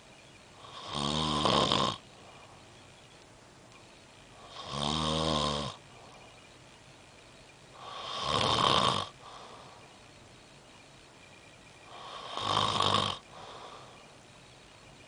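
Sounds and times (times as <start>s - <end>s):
person snoring: 0.6s - 2.0s, 4.4s - 5.8s, 7.8s - 9.6s, 11.9s - 13.9s.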